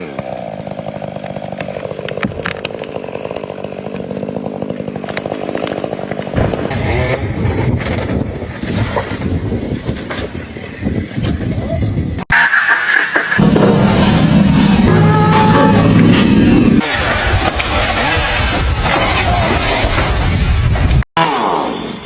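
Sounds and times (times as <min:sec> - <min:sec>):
chainsaw engine running: 0:00.0 - 0:08.5, 0:13.4 - 0:20.3
rough rumbling with cracks: 0:01.1 - 0:12.2.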